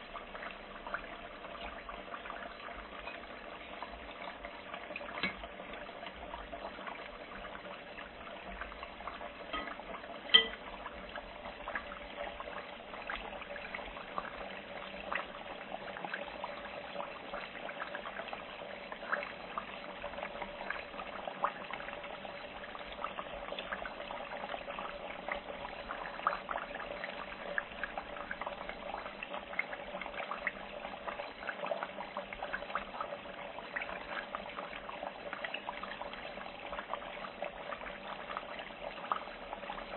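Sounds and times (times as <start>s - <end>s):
oil crackles and pops: 0.0s - 7.2s
food frying in hot oil: 0.0s - 39.9s.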